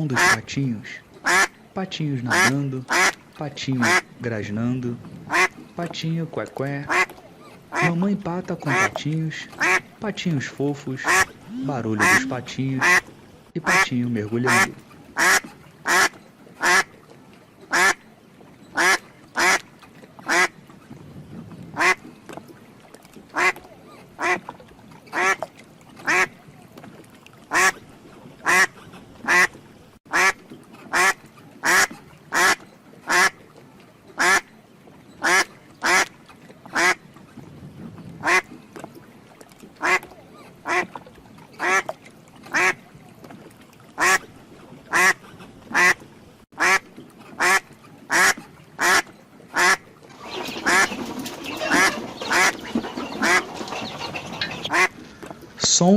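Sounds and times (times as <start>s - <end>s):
duck quacking: 0.1s - 0.5s, 1.2s - 1.5s, 2.3s - 3.2s, 3.8s - 4.1s, 5.3s - 5.5s, 6.8s - 7.1s, 7.7s - 8.0s, 8.7s - 9.9s, 11.0s - 13.0s, 13.6s - 16.9s, 17.7s - 18.0s, 18.8s - 19.6s, 20.3s - 20.5s, 21.8s - 22.0s, 23.4s - 23.6s, 24.2s - 24.4s, 25.1s - 25.4s, 26.0s - 26.3s, 27.5s - 27.8s, 28.4s - 29.5s, 30.1s - 33.4s, 34.2s - 34.4s, 35.2s - 36.1s, 36.7s - 37.0s, 38.2s - 38.4s, 39.8s - 40.0s, 40.6s - 40.9s, 41.6s - 41.9s, 42.5s - 42.8s, 44.0s - 44.2s, 44.9s - 46.0s, 46.6s - 46.8s, 47.4s - 54.9s.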